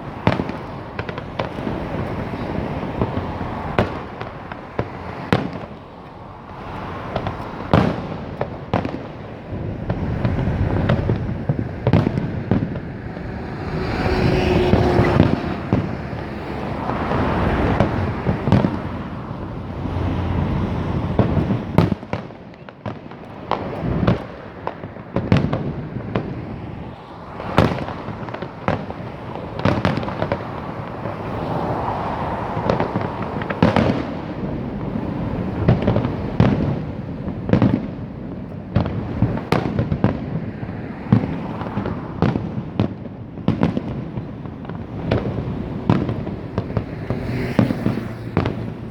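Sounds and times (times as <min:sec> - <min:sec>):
fireworks bangs: 0:00.0 - 0:48.9.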